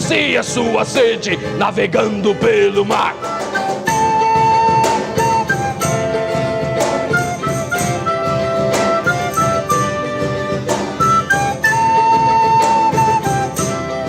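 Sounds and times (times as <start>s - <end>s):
drums: 0.0s - 14.0s
lead melody in held notes: 3.4s - 14.0s.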